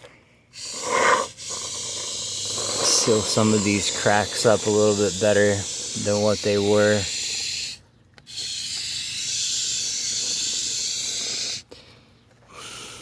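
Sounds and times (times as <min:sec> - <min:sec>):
aerosol foam can hissing: 0:00.6 - 0:11.6.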